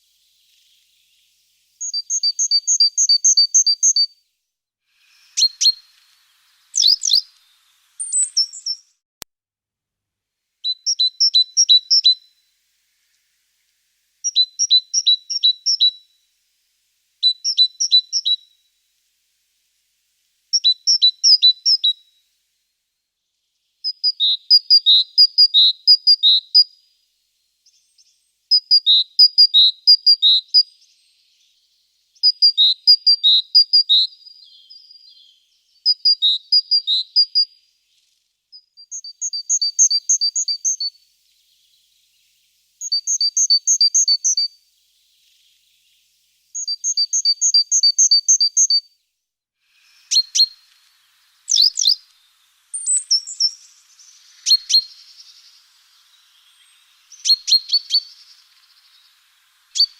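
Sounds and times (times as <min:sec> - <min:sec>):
short bird chirps: 0:00.0 - 0:04.2, 0:04.9 - 0:09.0, 0:10.6 - 0:13.6, 0:14.2 - 0:16.3, 0:17.2 - 0:18.7, 0:27.6 - 0:59.9.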